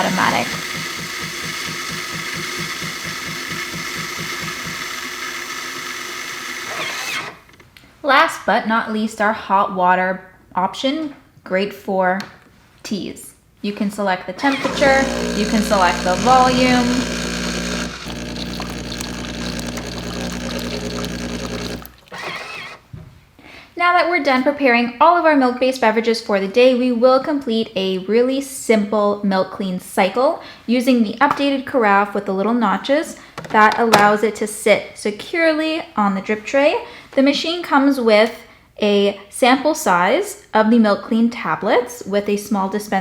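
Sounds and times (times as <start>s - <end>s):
milk frothing hiss: 0.0s - 7.3s, 14.4s - 22.8s
pump pulsing: 0.0s - 7.4s, 14.4s - 22.8s.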